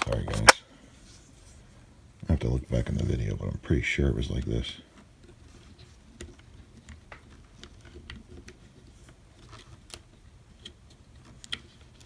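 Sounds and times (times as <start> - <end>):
small plastic and metal parts clicking: 0.0 - 0.6.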